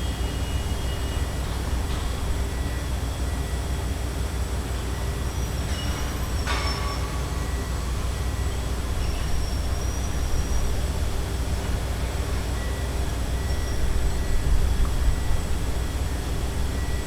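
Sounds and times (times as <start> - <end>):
construction noise: 0.0 - 17.0
faint high squeals: 5.3 - 11.3, 12.6 - 14.6.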